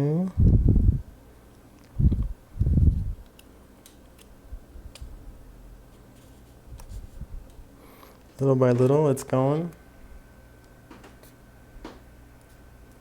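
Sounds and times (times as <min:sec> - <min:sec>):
dull low thumps: 0:00.4 - 0:01.1, 0:02.0 - 0:03.2.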